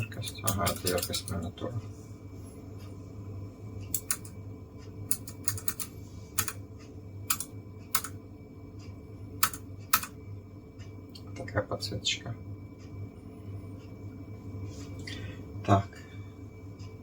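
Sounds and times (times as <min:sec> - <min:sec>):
clicky keyboard keystrokes: 0:03.9 - 0:04.4, 0:05.1 - 0:06.6, 0:07.3 - 0:08.2, 0:09.4 - 0:10.1.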